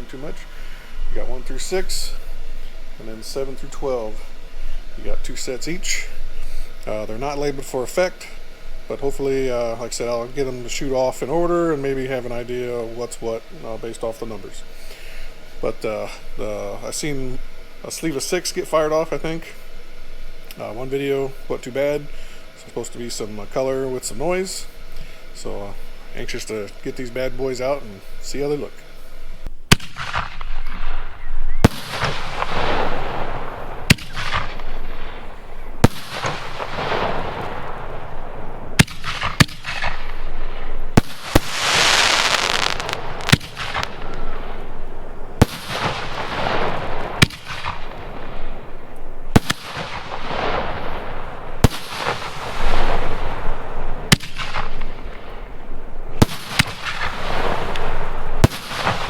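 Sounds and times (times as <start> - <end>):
firework burst hiss: 0.0 - 59.0
firework rushing tail: 0.0 - 59.0
firework shells banging: 29.7 - 55.5, 56.1 - 59.0.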